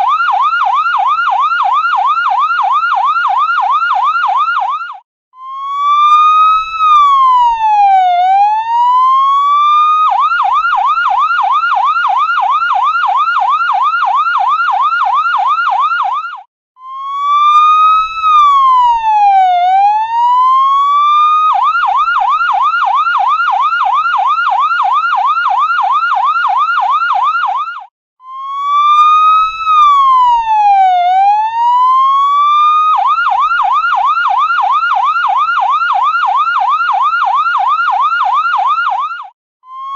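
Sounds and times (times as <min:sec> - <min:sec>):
electronic ambulance siren: 0:00.0 - 0:39.9.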